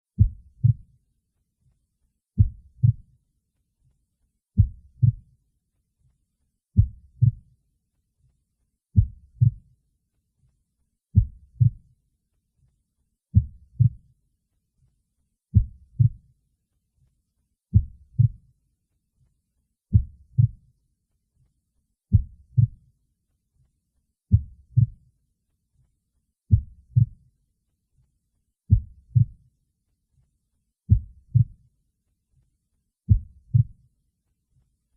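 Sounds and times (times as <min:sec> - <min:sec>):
heartbeat: 0:00.2 - 0:00.9, 0:02.4 - 0:03.1, 0:04.6 - 0:05.3, 0:06.8 - 0:07.5, 0:09.0 - 0:09.7, 0:11.2 - 0:11.9, 0:13.3 - 0:14.1, 0:15.5 - 0:16.3, 0:17.7 - 0:18.5, 0:19.9 - 0:20.6, 0:22.1 - 0:22.8, 0:24.3 - 0:25.0, 0:26.5 - 0:27.2, 0:28.7 - 0:29.4, 0:30.9 - 0:31.6, 0:33.1 - 0:33.8.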